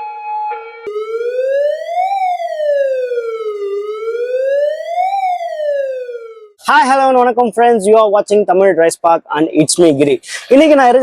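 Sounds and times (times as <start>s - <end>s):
ambulance siren: 0.9s - 6.6s.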